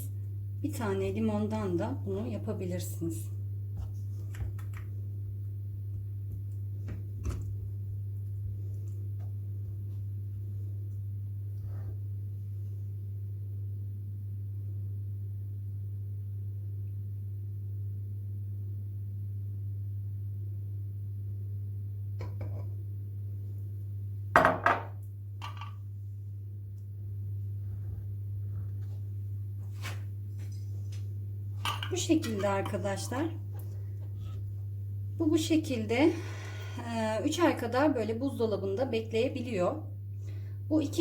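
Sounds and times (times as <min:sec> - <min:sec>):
steady low hum: 0:00.0 - 0:41.0
kitchenware clinking and clattering: 0:31.6 - 0:32.8.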